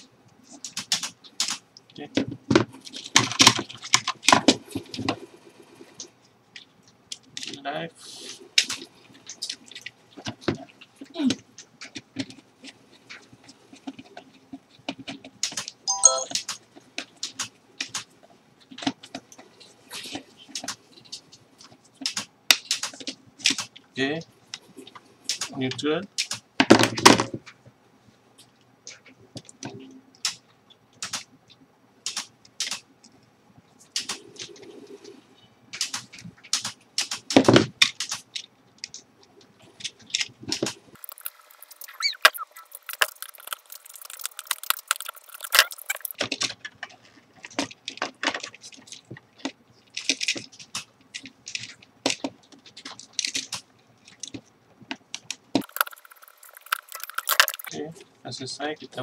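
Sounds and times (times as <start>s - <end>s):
hands handling wires and parts: 37.8s - 57.8s.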